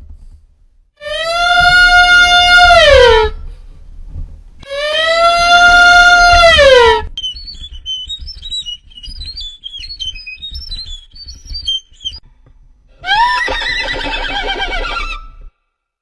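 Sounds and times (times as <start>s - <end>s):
violin squeaky high notes: 13.0s - 15.4s
violin imitating horse whinny: 13.0s - 15.5s.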